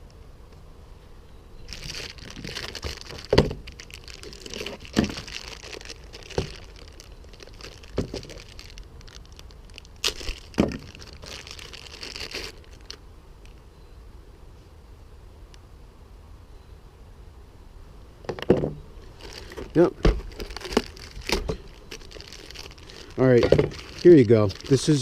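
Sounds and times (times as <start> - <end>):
rustling and crinkling of tools: 1.7 - 13.0, 18.3 - 25.0.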